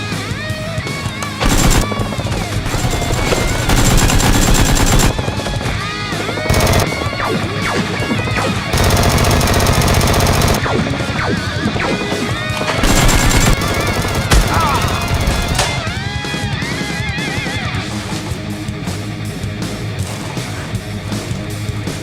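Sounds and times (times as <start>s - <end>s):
background music: 0.0s - 22.0s
automatic gunfire bursts: 1.0s - 16.2s.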